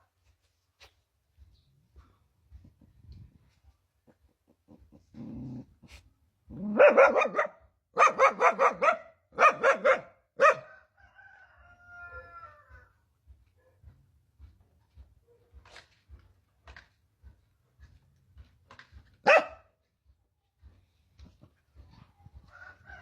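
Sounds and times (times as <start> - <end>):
dog-like yapping barks: 6.6 - 10.7, 19.2 - 19.7.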